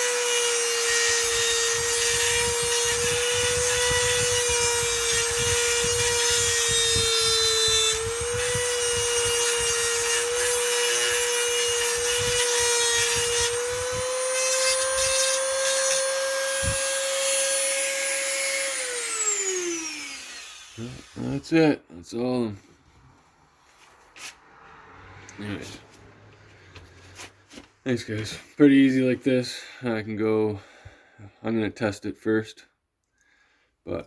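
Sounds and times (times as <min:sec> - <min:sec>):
rotary tool grinding metal: 0:00.0 - 0:21.6.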